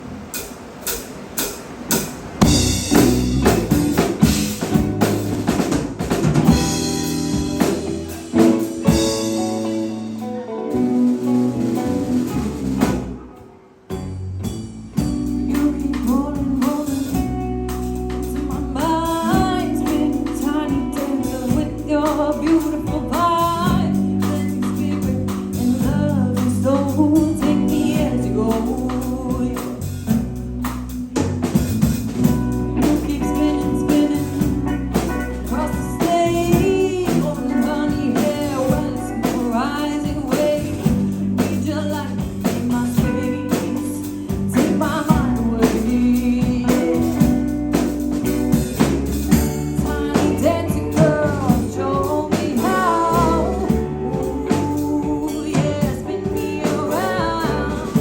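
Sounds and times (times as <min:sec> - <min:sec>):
live rock band playing: 0:00.3 - 0:58.0
woman singing lead: 0:15.2 - 0:30.2, 0:32.2 - 0:58.0.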